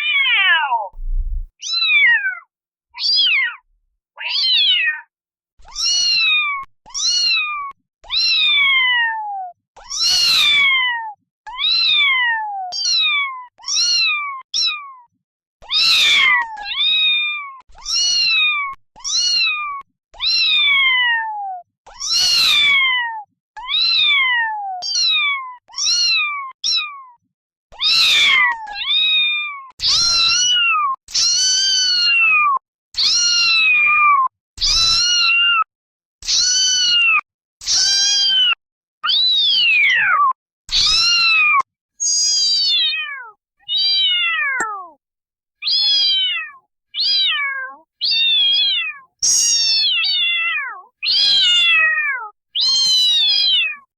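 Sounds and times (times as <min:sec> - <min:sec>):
kittens meowing: 0:00.1 - 0:02.0, 0:15.7 - 0:21.2, 0:27.8 - 0:38.6, 0:39.4 - 0:45.0, 0:45.6 - 0:53.9.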